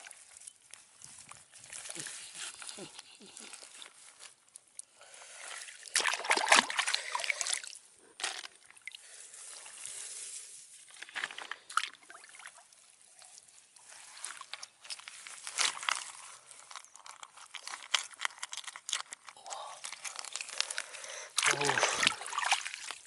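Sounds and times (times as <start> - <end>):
water sloshing and trickling: 0.0 - 23.0
small splashes: 4.8 - 7.8, 21.4 - 23.0.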